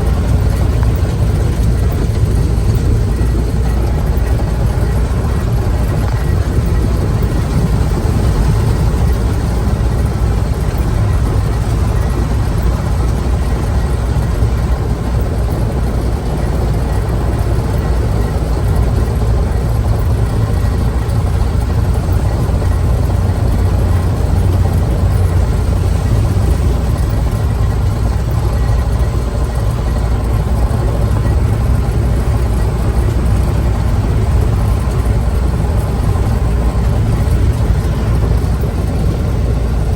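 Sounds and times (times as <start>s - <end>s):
truck engine droning: 0.0s - 39.9s.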